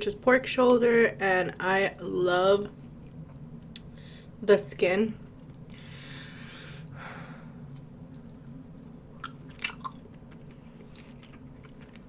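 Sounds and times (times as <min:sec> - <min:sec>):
wet mouth clicks and smacks: 0:07.7 - 0:10.1
mouth chewing food: 0:07.7 - 0:12.0.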